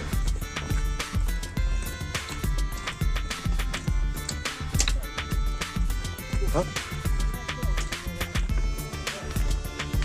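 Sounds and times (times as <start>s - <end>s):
music with kick drum and hi-hats: 0.0s - 10.0s.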